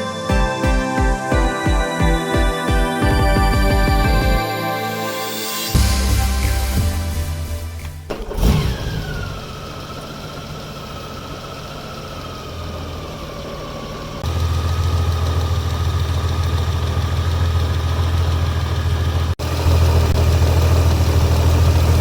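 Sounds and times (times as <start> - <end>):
engine whine: 0.0 - 22.0
motorcycle engine starting and idling: 7.8 - 22.0.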